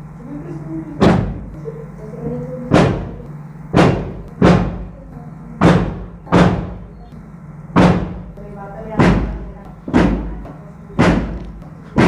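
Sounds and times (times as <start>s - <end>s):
steady low hum: 0.0s - 12.0s
sharp slapping strikes: 7.8s - 8.4s.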